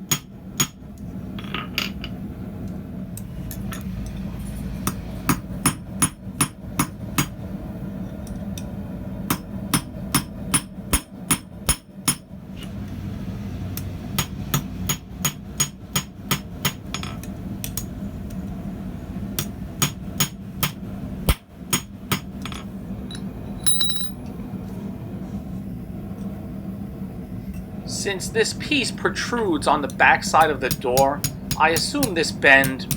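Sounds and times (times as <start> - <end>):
steady low hum: 0.0 - 32.9
hammer striking steel on anvil: 0.1 - 0.8, 4.8 - 7.4, 9.3 - 12.3, 19.4 - 24.2, 30.3 - 32.9
metallic ring: 23.1 - 24.3.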